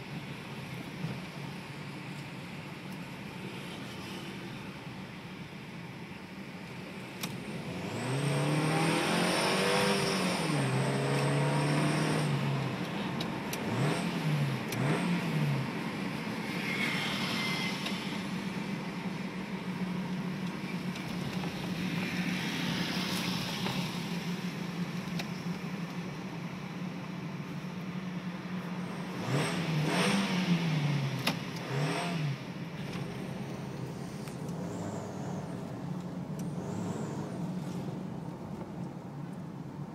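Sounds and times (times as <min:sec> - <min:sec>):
car engine idling and revving: 0:00.0 - 0:39.9.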